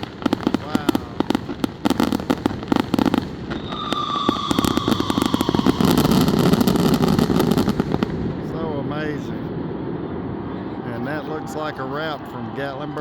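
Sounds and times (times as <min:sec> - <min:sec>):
fireworks bangs and crackling: 0:00.0 - 0:11.7
firework whistling tone: 0:03.4 - 0:07.7.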